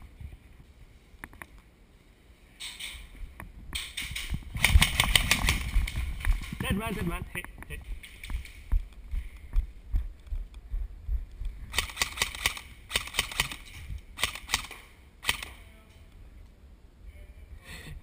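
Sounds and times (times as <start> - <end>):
airsoft guns firing bursts: 4.6 - 6.1, 11.7 - 15.6.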